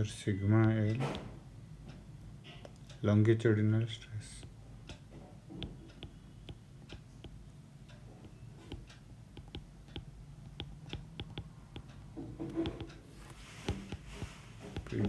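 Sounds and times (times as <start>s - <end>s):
pen writing on a surface: 8.2s - 15.0s.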